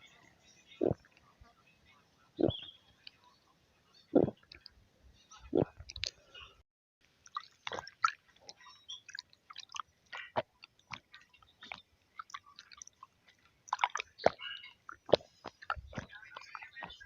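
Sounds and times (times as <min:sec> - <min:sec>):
person chewing: 0:05.6 - 0:06.2, 0:07.2 - 0:17.0.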